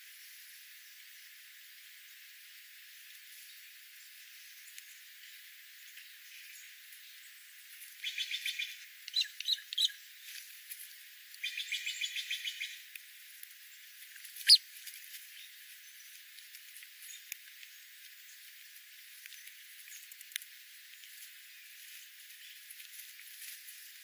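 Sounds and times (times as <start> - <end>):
bird chirps: 8.0 - 10.0, 11.4 - 12.8, 14.4 - 14.6
small birds trilling: 8.0 - 10.0, 14.3 - 14.7.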